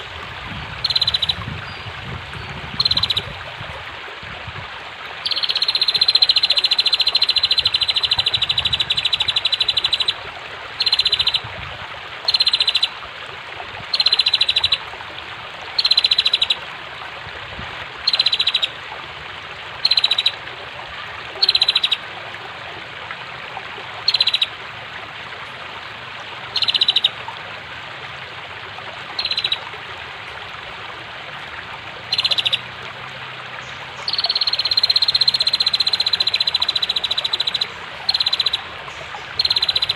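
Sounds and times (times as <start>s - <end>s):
flowing water hiss: 0.0s - 39.9s.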